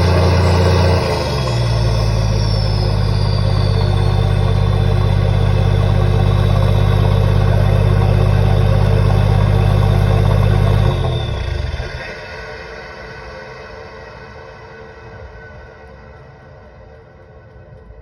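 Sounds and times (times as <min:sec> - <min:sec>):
turbo whistle: 0:00.0 - 0:12.2
diesel engine running: 0:00.0 - 0:12.4.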